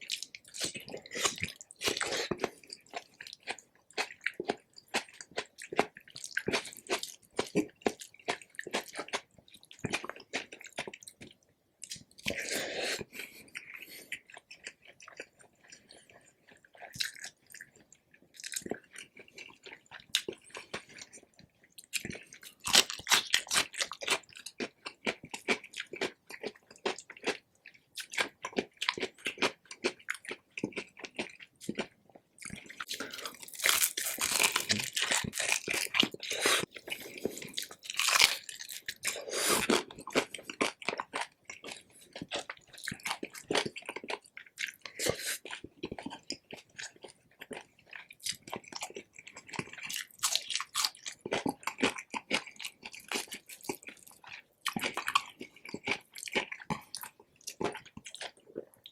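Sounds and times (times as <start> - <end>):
crunching crispy pork skin: 32.9 - 36.2, 37.7 - 39.0.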